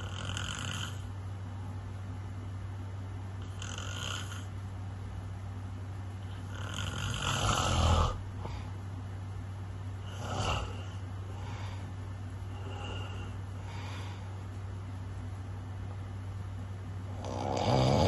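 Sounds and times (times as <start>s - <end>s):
snoring: 0.0s - 1.1s, 3.4s - 4.5s, 6.4s - 8.2s, 10.0s - 11.0s, 17.1s - 18.0s
steady low hum: 0.0s - 18.0s.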